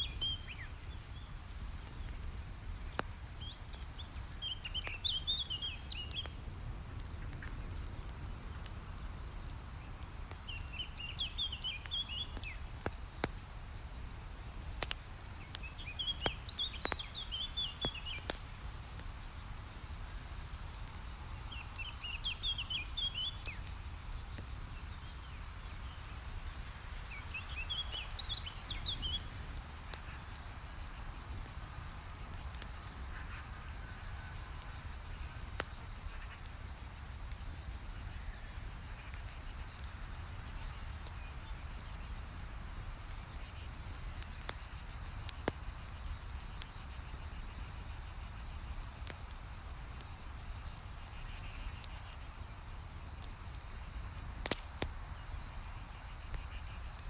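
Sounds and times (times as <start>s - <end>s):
campfire crackling: 0.0s - 57.0s
insects chirping: 0.0s - 57.0s
bird-like chirps: 15.4s - 18.4s.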